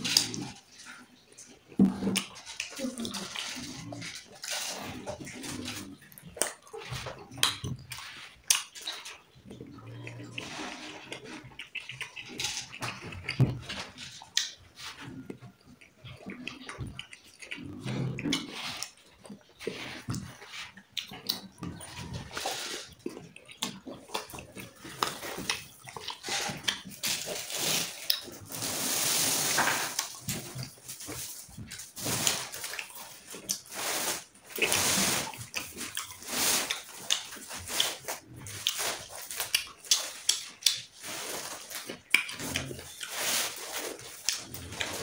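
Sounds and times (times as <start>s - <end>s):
person chewing and slurping food: 0.0s - 45.0s
wet smacks and clicks: 38.6s - 40.9s, 42.0s - 42.7s.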